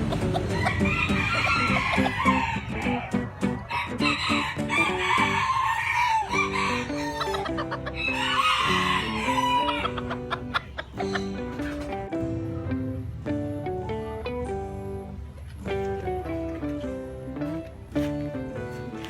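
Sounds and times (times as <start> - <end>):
background music: 0.0 - 19.0
rooster crowing: 0.4 - 10.2.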